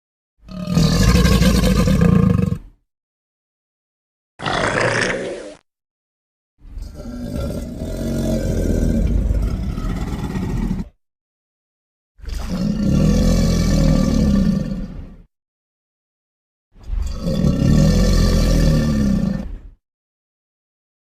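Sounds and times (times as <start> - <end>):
crocodile bellowing: 0.5 - 2.7, 4.4 - 5.6, 6.7 - 11.0, 12.2 - 15.1, 16.9 - 19.7.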